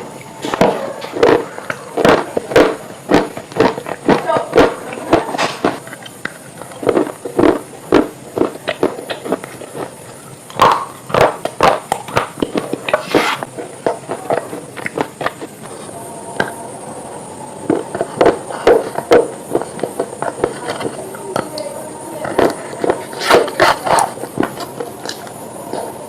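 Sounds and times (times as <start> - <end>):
sharp crunches: 0.0 - 16.6.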